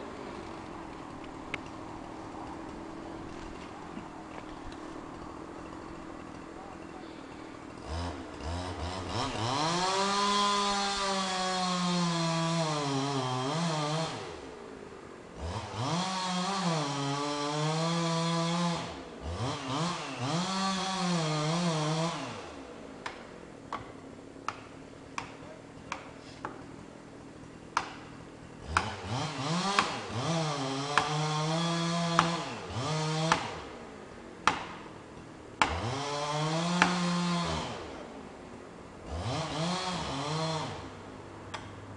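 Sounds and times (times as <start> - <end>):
chainsaw cutting wood: 2.5 - 14.6, 15.3 - 26.7, 27.7 - 38.2, 39.0 - 41.8
sharp knocks: 34.4 - 34.8.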